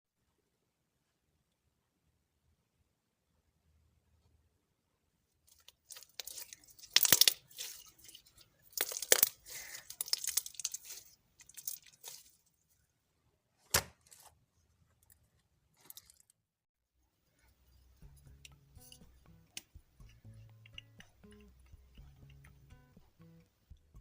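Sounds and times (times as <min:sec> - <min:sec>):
slime crackling and tearing: 0:05.5 - 0:12.4.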